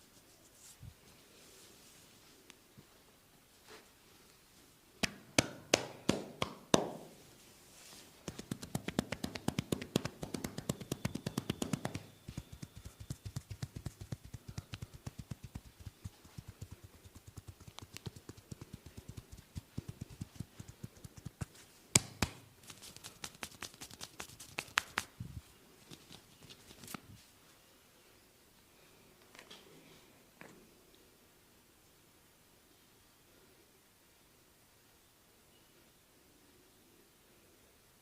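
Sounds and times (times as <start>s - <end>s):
hands tapping and slapping head: 5.0s - 7.1s, 8.2s - 25.2s.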